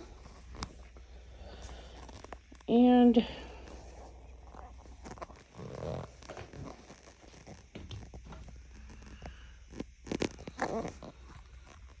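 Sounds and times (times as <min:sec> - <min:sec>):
handling clicks and rustling: 0:00.0 - 0:01.0, 0:03.6 - 0:12.0.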